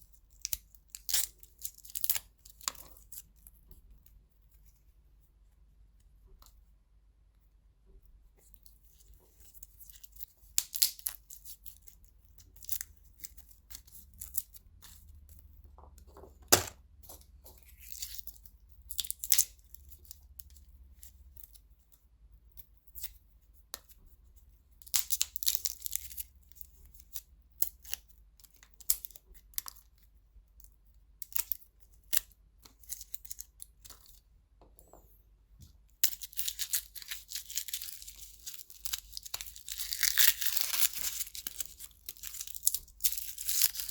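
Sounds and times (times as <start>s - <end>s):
garlic skins crackling and tearing: 0.4s - 3.2s, 24.8s - 30.0s, 36.0s - 43.9s.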